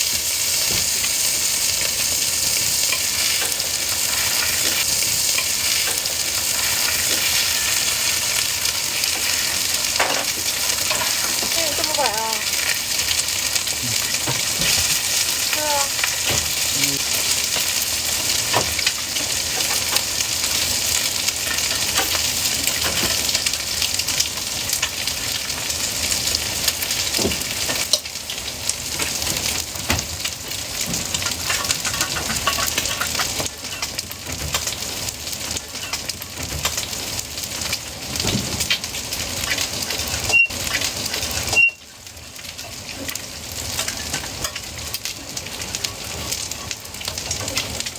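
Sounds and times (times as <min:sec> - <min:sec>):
food frying in hot oil: 0:00.0 - 0:47.9
short high beeps: 0:40.3 - 0:40.6, 0:41.5 - 0:41.8.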